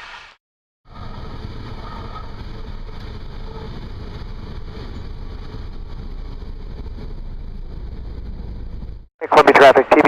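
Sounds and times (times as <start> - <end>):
airplane engine and propeller rumble: 0.9 - 10.0.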